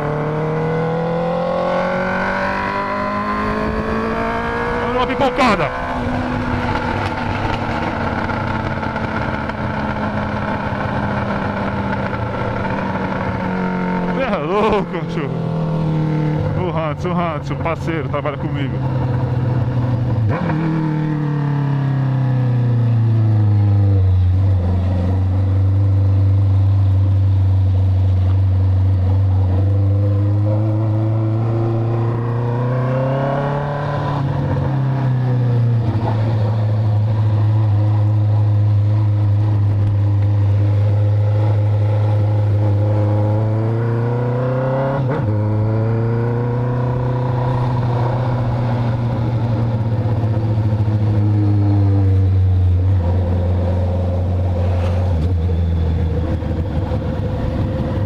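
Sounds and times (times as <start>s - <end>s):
motorcycle engine running loud: 0.0s - 58.0s.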